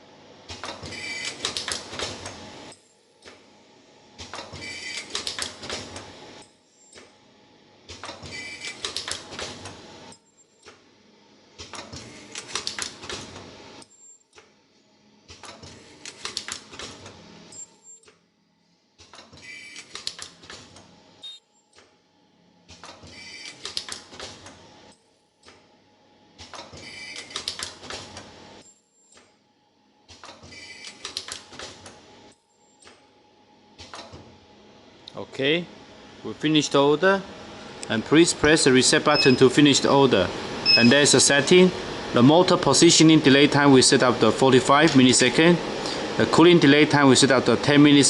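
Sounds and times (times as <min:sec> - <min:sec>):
machine clicking and clatter: 0:00.5 - 0:02.4, 0:04.2 - 0:06.1, 0:07.9 - 0:10.8, 0:11.6 - 0:13.5, 0:15.3 - 0:17.2, 0:26.4 - 0:28.3, 0:30.1 - 0:32.0.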